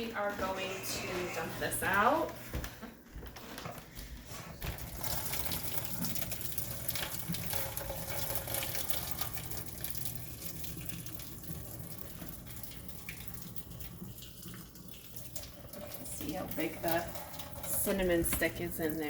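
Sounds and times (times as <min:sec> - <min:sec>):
water pouring into sink: 0:04.6 - 0:19.0.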